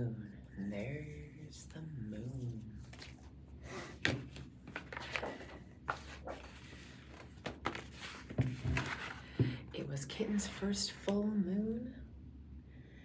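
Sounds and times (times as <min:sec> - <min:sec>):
paper rustling: 0:02.3 - 0:09.3.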